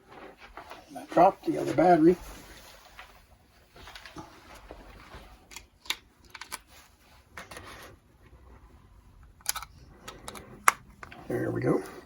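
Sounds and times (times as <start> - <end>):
hands handling plastic radio: 3.8 - 8.0, 9.2 - 11.3.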